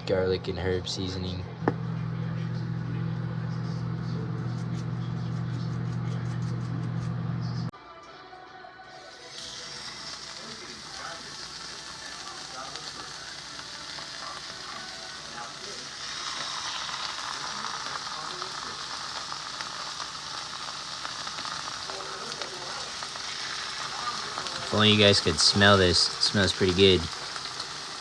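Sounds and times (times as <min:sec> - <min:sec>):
steaks sizzling as they fry: 0:08.9 - 0:28.0.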